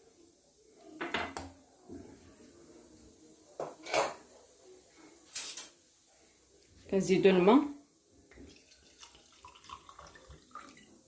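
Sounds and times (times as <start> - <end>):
kitchenware clinking and knocking: 1.0 - 1.5, 3.6 - 4.2.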